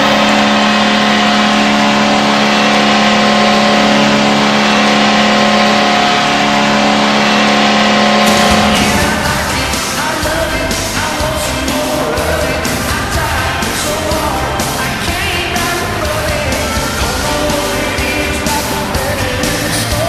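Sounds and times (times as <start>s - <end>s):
arena goal horn blowing: 0.0s - 10.2s
goal song music: 8.2s - 20.0s.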